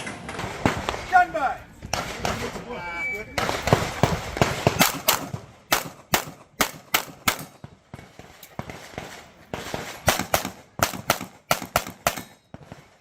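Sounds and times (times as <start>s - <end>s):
pistol shots: 3.4s - 12.9s.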